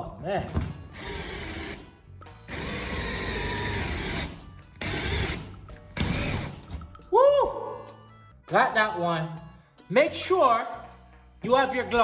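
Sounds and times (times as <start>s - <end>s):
electric drill drilling metal: 1.0s - 1.8s, 2.5s - 6.6s.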